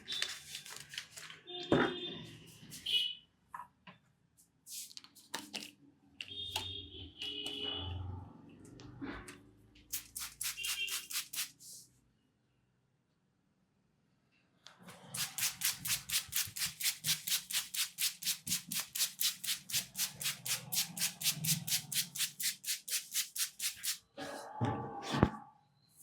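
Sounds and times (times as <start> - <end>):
hands rubbing over hair: 10.0 - 11.8.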